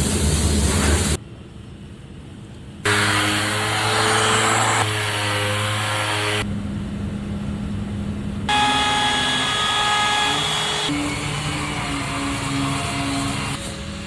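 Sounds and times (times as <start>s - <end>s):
air sander whining on wood: 2.9s - 6.5s, 8.5s - 13.6s.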